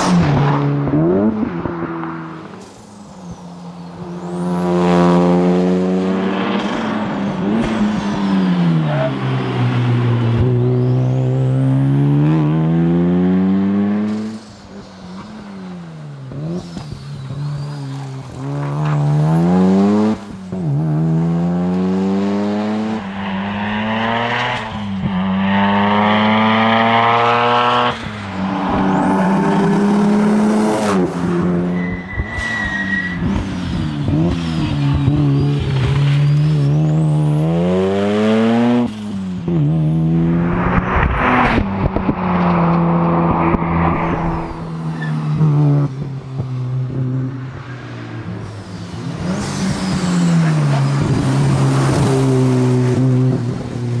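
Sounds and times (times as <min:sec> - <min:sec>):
car engine revving: 0:03.8 - 0:32.4, 0:33.1 - 0:54.0
high-pitched squeal: 0:27.7 - 0:37.0, 0:40.0 - 0:45.6.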